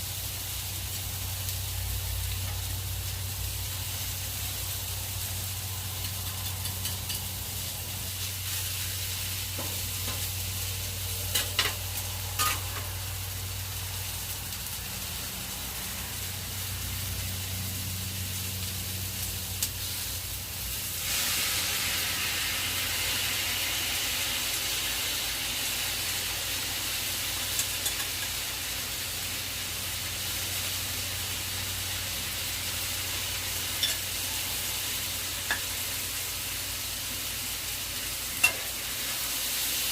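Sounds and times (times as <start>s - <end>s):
food sizzling in a frying pan: 0.0s - 39.9s
utensil clicking against pan: 6.0s - 7.4s, 27.5s - 28.4s.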